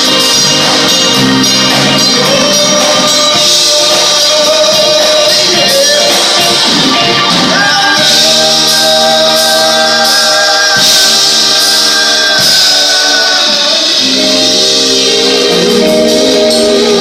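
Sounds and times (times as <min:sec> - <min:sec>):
rock band with sung vocals: 0:00.0 - 0:17.0
shaking percussion rhythm: 0:00.0 - 0:17.0.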